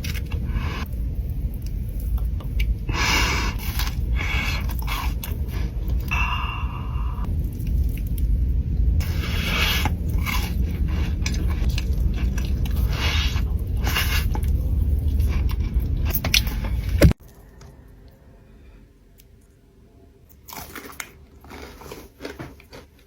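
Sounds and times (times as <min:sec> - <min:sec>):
steady low rumble: 0:00.0 - 0:20.3
crunchy bites and chewing: 0:09.0 - 0:17.6, 0:20.3 - 0:23.0.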